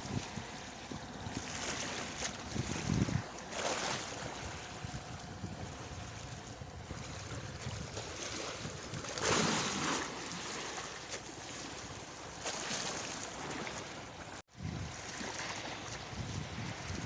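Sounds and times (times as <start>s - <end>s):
wind on microphone: 0.0s - 10.6s, 14.5s - 17.0s
sea waves: 0.0s - 17.0s.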